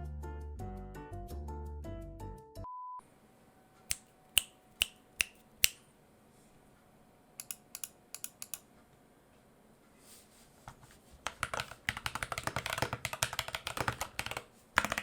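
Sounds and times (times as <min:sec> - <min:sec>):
keyboard keystrokes: 0:07.4 - 0:08.6, 0:11.3 - 0:15.0.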